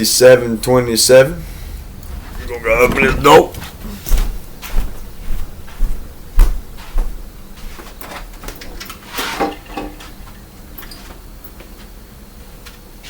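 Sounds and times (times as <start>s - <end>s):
rustling: 0.6s - 8.0s.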